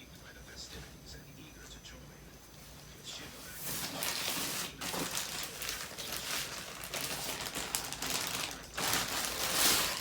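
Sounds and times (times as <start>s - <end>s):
plastic packaging crinkling: 3.7s - 10.0s.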